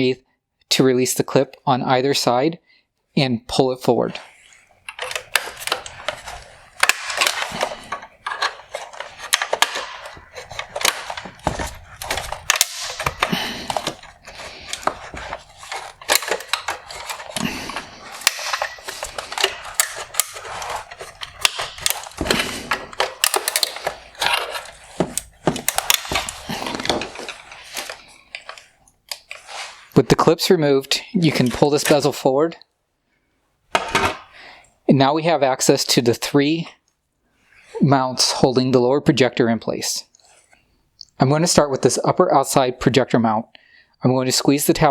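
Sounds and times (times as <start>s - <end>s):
metal tool scraping plastic: 4.0s - 30.3s
plastic clips clicking and snapping: 4.2s - 29.6s.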